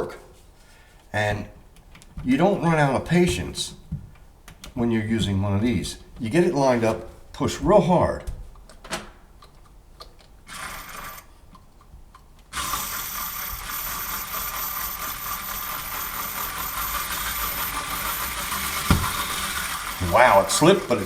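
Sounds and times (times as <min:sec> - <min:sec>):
power screwdriver whirring: 0:10.5 - 0:11.3, 0:12.5 - 0:21.0
screwdriver bit slipping knock: 0:18.5 - 0:19.9.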